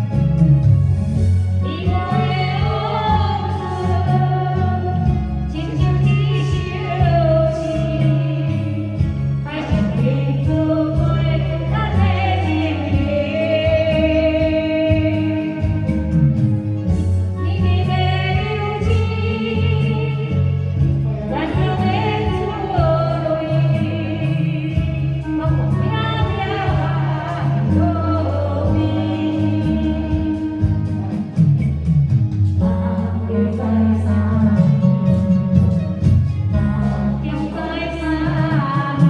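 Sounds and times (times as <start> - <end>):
band accompaniment: 0.0 - 39.0
person singing with vibrato: 17.4 - 31.4, 32.6 - 35.7.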